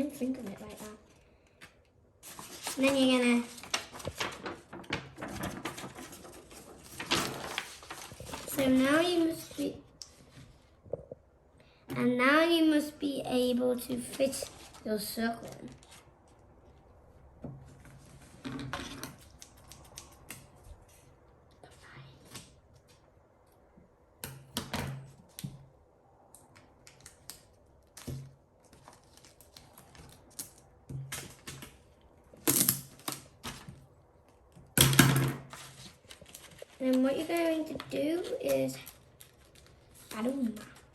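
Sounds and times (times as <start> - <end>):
paper rustling: 0.2 - 10.5, 13.8 - 16.4, 26.8 - 33.8, 35.4 - 40.9.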